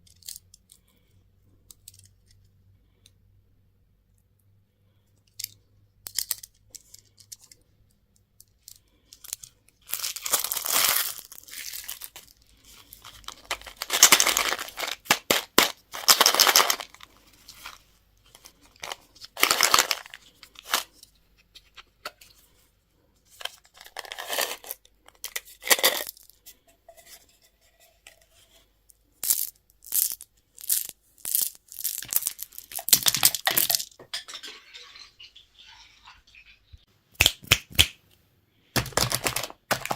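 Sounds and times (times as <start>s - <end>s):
candy wrappers crinkling: 8.5s - 21.0s, 23.4s - 26.4s, 29.2s - 35.4s, 38.8s - 39.9s.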